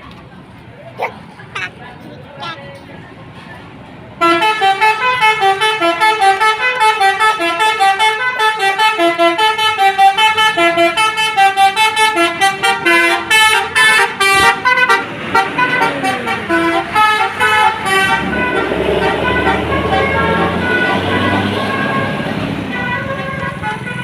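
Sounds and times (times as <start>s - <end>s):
bus multi-tone horn melody: 4.2s - 24.0s.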